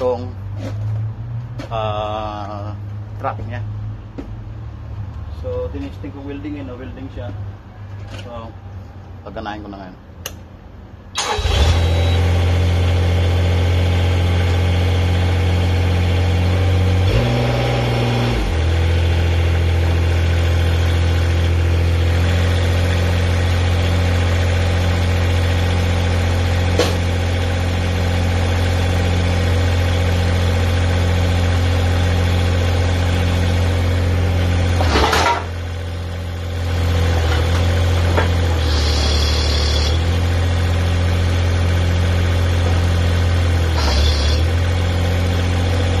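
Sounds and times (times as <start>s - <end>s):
excavator engine running: 18.4s - 46.0s.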